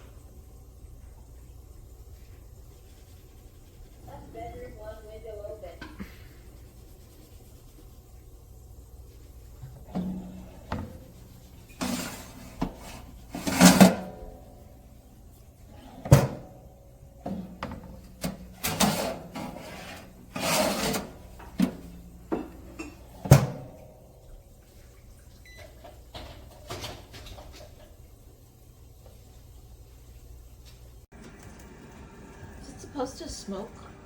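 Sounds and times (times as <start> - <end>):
scraping or rustling: 9.6 - 14.5, 17.2 - 22.0.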